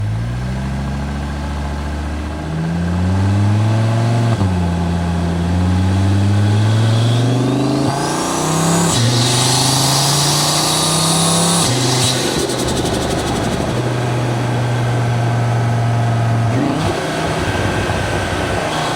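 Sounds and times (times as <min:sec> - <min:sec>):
car engine accelerating: 0:00.0 - 0:18.9
rising turbo whistle: 0:06.3 - 0:14.1.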